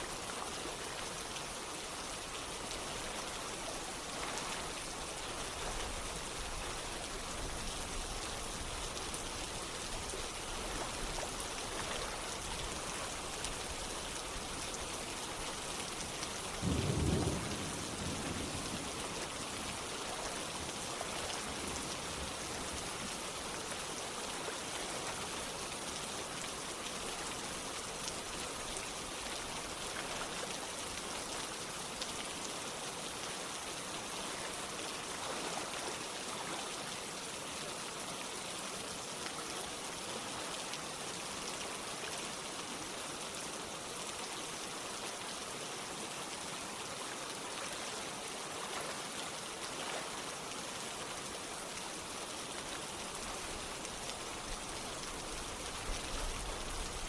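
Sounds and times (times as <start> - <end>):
rain pattering: 0.0 - 57.0
stream of water running: 0.0 - 57.0.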